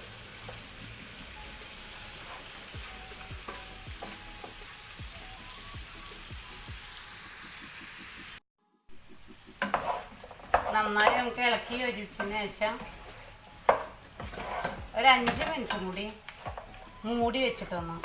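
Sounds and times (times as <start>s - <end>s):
chicken sizzling in a pan: 0.0s - 18.0s
spoon stirring and scraping: 1.9s - 4.7s, 9.6s - 17.8s.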